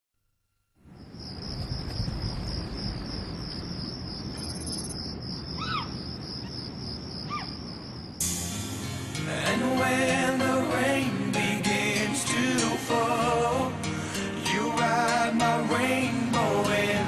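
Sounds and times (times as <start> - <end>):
crickets chirping: 0.7 - 9.3
music: 8.2 - 17.0.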